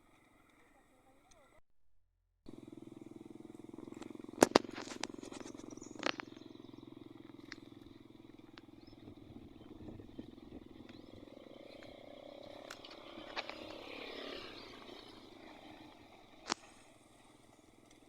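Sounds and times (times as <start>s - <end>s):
frogs calling in pulsing trill: 3.6s - 16.0s
sharp loud clicks: 3.8s - 6.6s, 16.4s - 16.8s.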